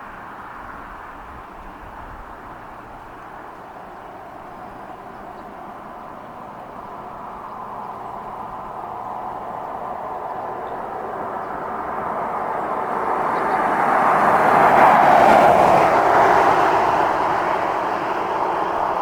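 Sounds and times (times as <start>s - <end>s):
vehicle passing by: 6.6s - 19.0s.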